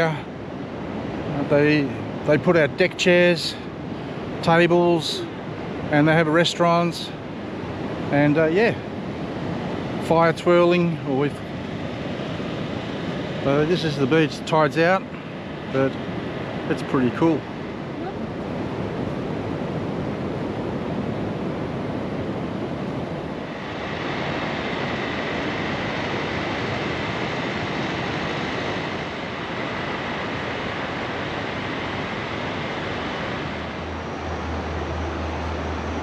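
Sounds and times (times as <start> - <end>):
surf washing on a beach: 0.0 - 36.0
wind: 0.0 - 36.0
low hum: 24.4 - 36.0.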